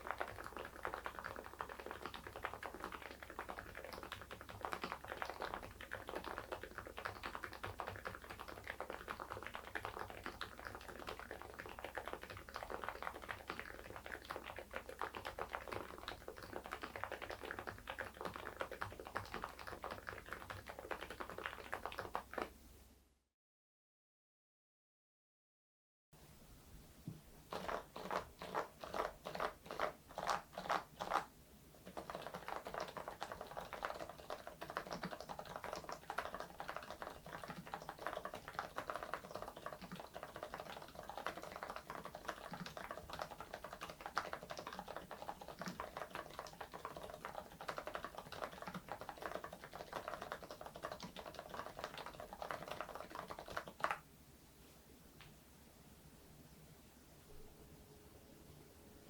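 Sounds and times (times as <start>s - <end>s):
typing on mechanical keyboard: 0.0s - 22.5s, 27.5s - 54.0s.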